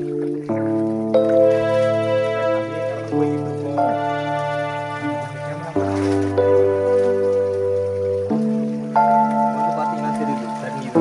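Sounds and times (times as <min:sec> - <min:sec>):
soft sustained music chords: 0:00.0 - 0:11.0.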